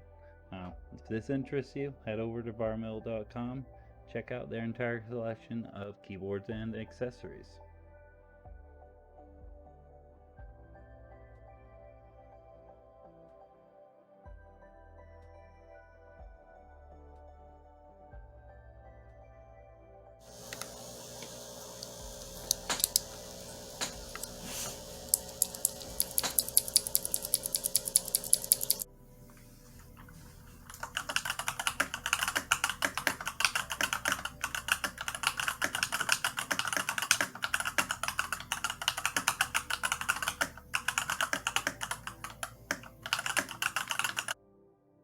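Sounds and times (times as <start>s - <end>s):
mechanical keyboard typing: 20.2s - 44.4s.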